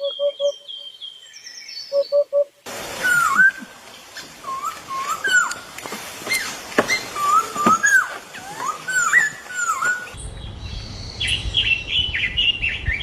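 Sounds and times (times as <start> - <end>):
high bird chirping: 0.0 - 2.5
bird swooping whistled call: 3.0 - 5.6, 6.3 - 10.2.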